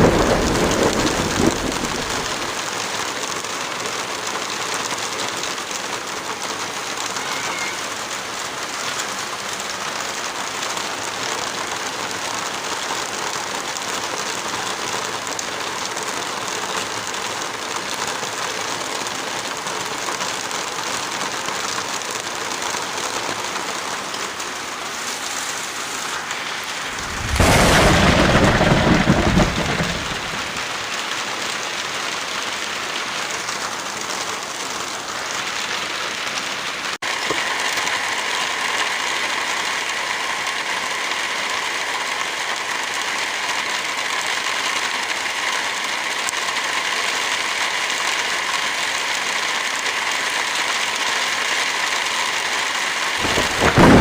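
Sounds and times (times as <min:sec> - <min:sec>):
low thunder clap: 0:00.0 - 0:02.6, 0:26.8 - 0:30.8, 0:53.2 - 0:54.0
steady rain hiss: 0:00.0 - 0:54.0.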